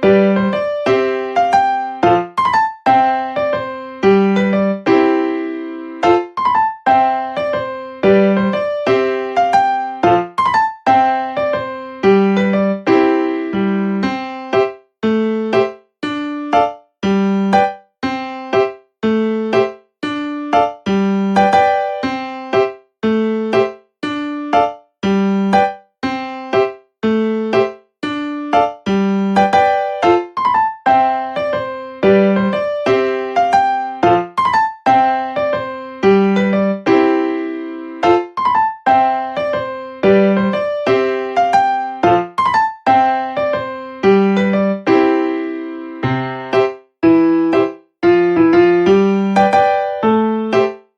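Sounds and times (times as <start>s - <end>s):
electric piano tune: 0.0s - 50.9s.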